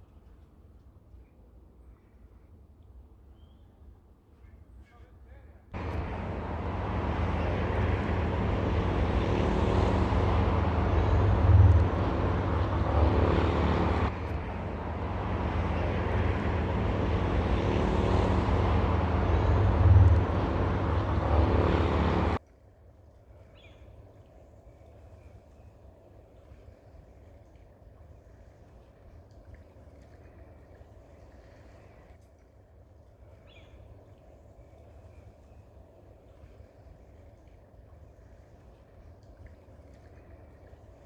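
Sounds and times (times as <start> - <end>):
engine humming: 5.8 - 22.4.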